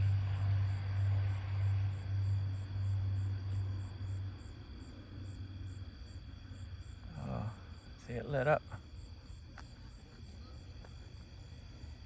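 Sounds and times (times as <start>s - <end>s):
low steady rumble: 0.0s - 12.0s.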